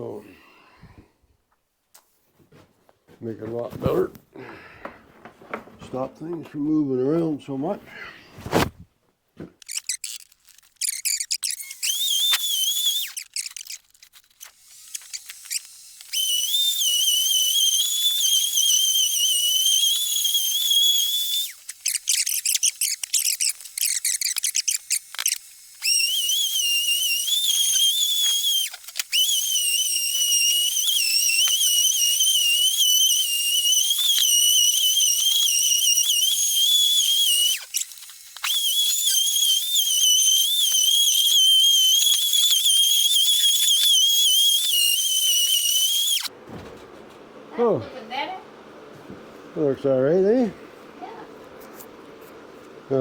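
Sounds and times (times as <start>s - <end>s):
orbital sander whining on wood: 11.4s - 13.8s, 14.5s - 46.4s.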